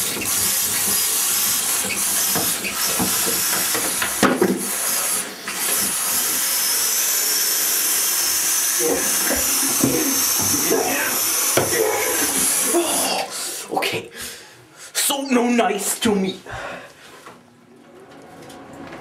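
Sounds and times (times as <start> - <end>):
faucet running water: 0.0 - 13.5.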